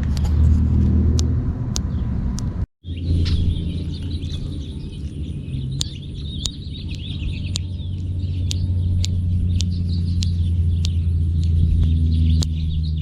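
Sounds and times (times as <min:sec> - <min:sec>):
birds chirping: 0:00.0 - 0:13.0
low rumble: 0:00.0 - 0:13.0
sharp clicks: 0:05.1 - 0:12.7.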